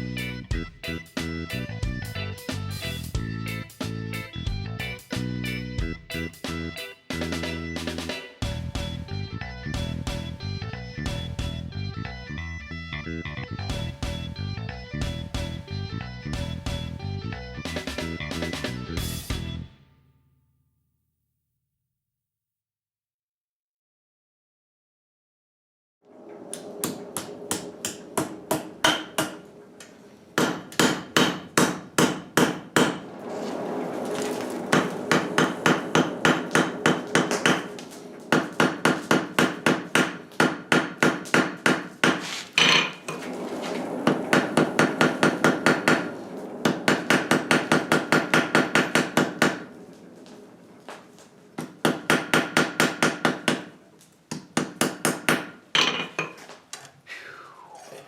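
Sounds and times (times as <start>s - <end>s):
hammer striking metal on anvil: 30.4s - 33.0s, 38.3s - 43.0s.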